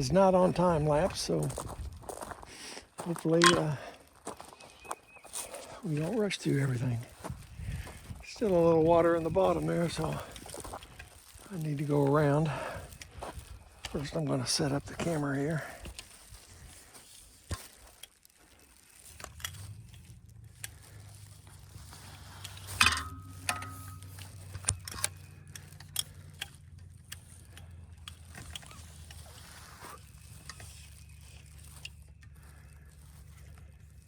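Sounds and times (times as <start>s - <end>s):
camera and tripod being handled: 3.2s - 3.8s, 15.0s - 34.0s.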